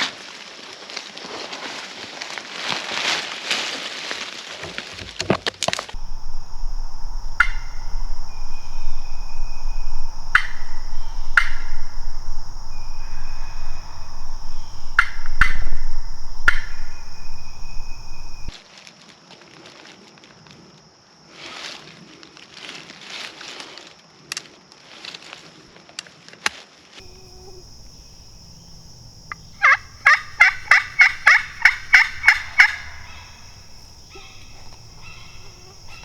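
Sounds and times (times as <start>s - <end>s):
turkeys gobbling: 6.0s - 18.5s, 29.6s - 36.0s.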